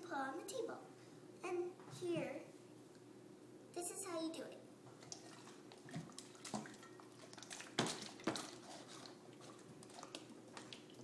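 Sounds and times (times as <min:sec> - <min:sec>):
water sloshing in bottles: 0:05.0 - 0:11.0.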